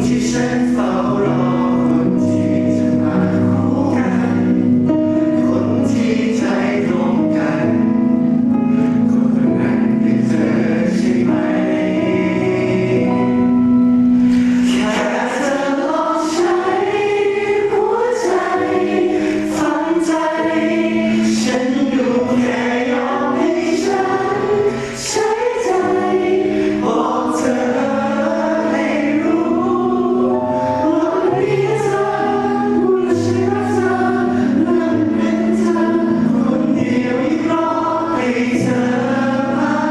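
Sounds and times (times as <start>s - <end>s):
group singing pop ballad live: 0.0s - 7.9s, 14.3s - 39.9s
backing music: 0.0s - 39.9s.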